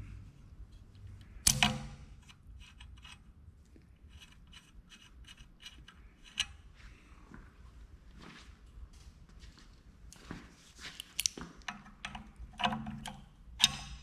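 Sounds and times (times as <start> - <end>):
light metal clicks and taps: 11.0 - 14.0.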